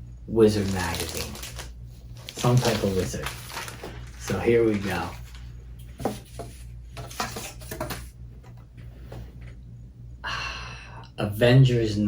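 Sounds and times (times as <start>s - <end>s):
packaging rustle: 0.5s - 5.5s.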